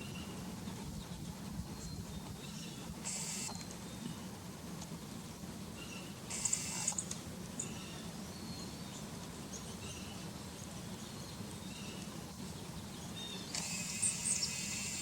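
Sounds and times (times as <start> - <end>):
steady low hum: 0.0 - 15.0
faint bird chirps: 5.8 - 15.0.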